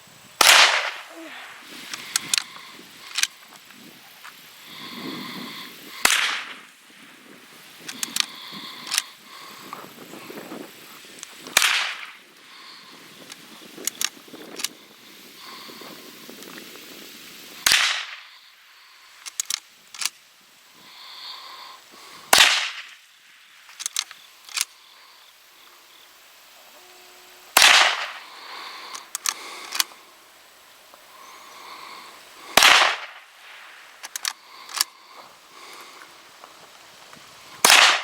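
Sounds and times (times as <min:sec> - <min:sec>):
rifle shots: 0:00.4 - 0:02.3, 0:06.0 - 0:06.6, 0:11.5 - 0:12.1, 0:17.6 - 0:18.2, 0:22.3 - 0:22.9, 0:27.6 - 0:28.3, 0:32.5 - 0:34.3, 0:37.6 - 0:38.0
rifle lever metallic clicks: 0:19.2 - 0:20.2, 0:23.7 - 0:24.7, 0:34.0 - 0:34.9.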